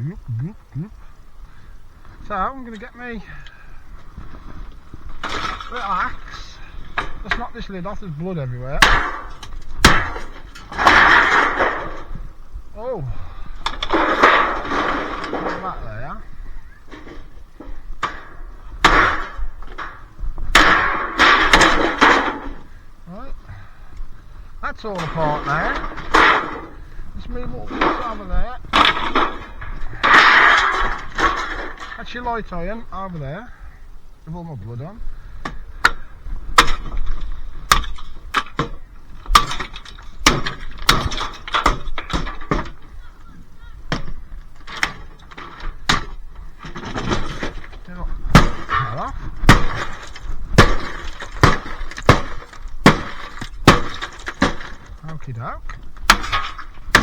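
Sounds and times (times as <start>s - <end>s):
metal parts clanking onto pile: 4.2s - 12.2s, 13.6s - 22.6s, 24.7s - 32.6s, 36.6s - 43.0s, 44.5s - 57.0s
axe striking metal casing: 8.8s - 11.9s, 20.6s - 22.5s, 37.7s - 42.8s, 48.3s - 54.9s.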